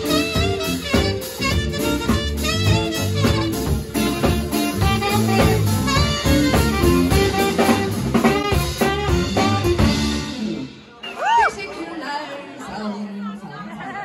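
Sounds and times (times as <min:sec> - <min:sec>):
upbeat swing jazz with drums: 0:00.0 - 0:10.8.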